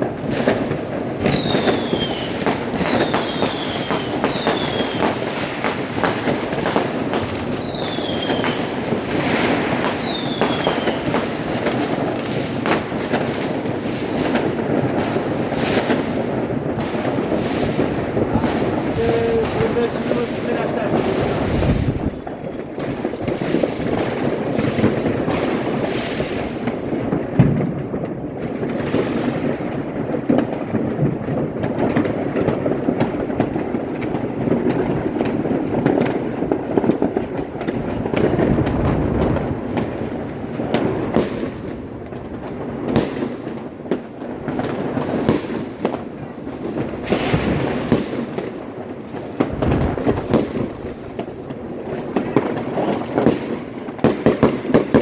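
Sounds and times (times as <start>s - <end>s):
fireworks crackling: 0.0s - 55.0s
loud firework bangs: 0.0s - 55.0s.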